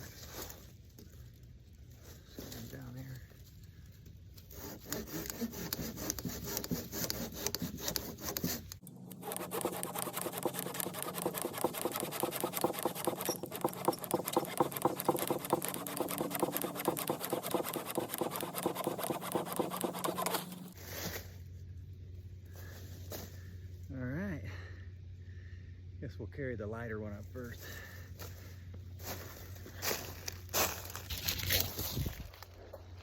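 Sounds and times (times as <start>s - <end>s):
handsaw cutting log: 4.4s - 20.8s.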